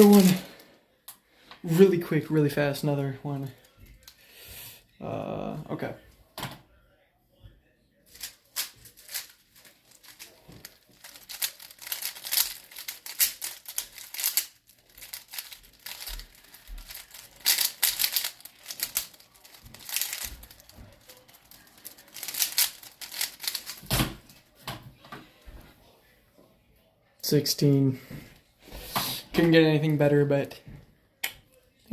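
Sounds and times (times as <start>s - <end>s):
puzzle cube clicking and clacking: 8.1s - 24.1s.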